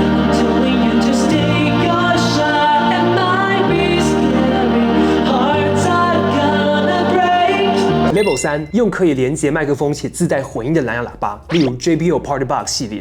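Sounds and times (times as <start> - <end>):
pop song with singing: 0.0 - 8.8.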